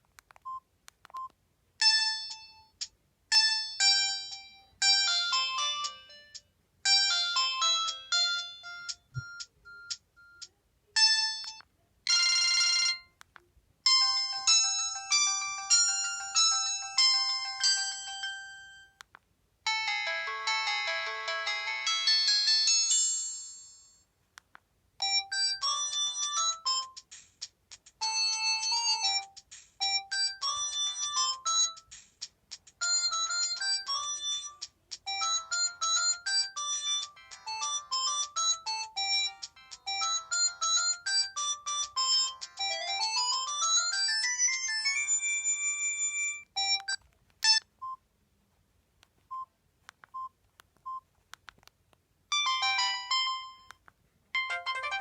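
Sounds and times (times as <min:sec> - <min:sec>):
polyphonic phone ringtones: 0:11.0 - 0:13.1, 0:13.9 - 0:19.0, 0:19.7 - 0:24.0, 0:25.0 - 0:27.0, 0:28.0 - 0:31.8, 0:32.8 - 0:47.6, 0:52.4 - 0:53.7, 0:54.4 - 0:55.0.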